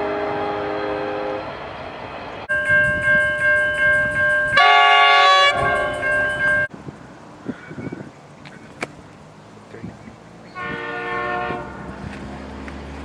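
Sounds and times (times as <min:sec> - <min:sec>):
high-pitched train horn chord: 0:00.0 - 0:01.9, 0:02.5 - 0:06.7, 0:10.6 - 0:11.9
low train horn chord: 0:00.0 - 0:06.7, 0:10.5 - 0:12.1.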